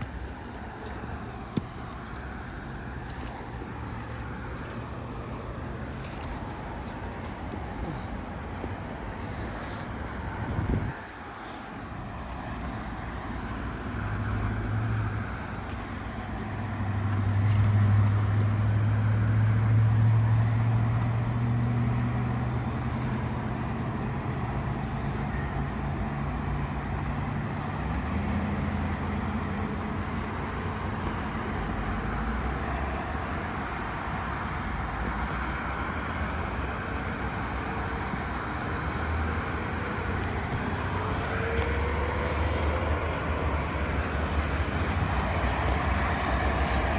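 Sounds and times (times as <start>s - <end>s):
vehicle engine droning: 0.0s - 46.9s.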